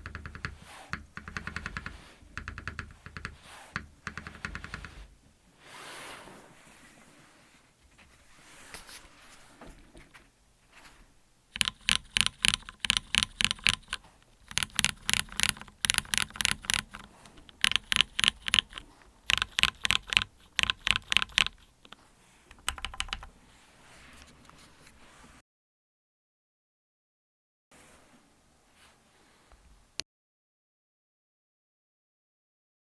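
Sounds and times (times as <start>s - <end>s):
mechanical keyboard keys clacking: 0.0s - 5.0s, 11.6s - 23.3s.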